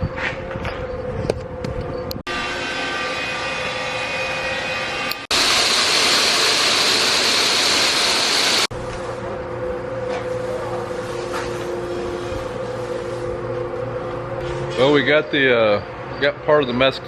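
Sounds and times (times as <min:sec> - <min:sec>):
machine hum with whining tones: 0:00.0 - 0:17.0
grain vacuum rushing hiss: 0:05.3 - 0:08.7.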